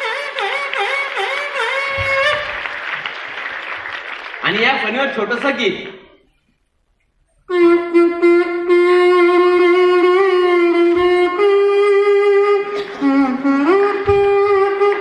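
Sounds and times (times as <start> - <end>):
buzzy comb melody: 0.0 - 2.7, 7.5 - 15.0.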